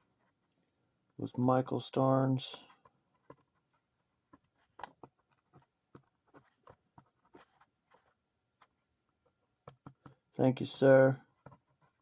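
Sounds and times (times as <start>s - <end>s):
pen writing on paper: 11.3s - 12.0s.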